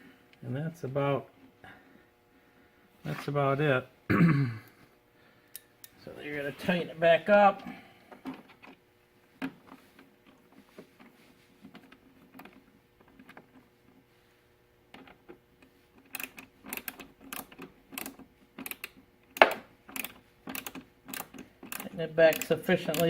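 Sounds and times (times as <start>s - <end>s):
socket ratchet clicking: 16.0s - 23.0s.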